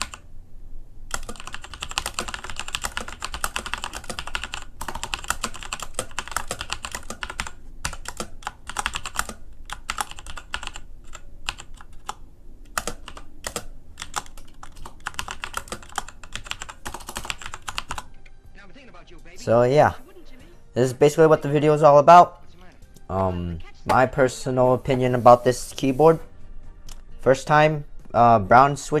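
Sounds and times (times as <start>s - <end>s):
fast typing on mechanical keyboard: 0.0s - 0.2s, 1.1s - 18.1s.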